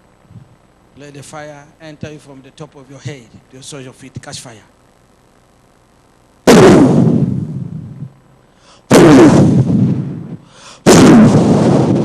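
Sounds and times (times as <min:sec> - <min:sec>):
loud explosion booms: 0:06.5 - 0:08.1, 0:08.9 - 0:12.0.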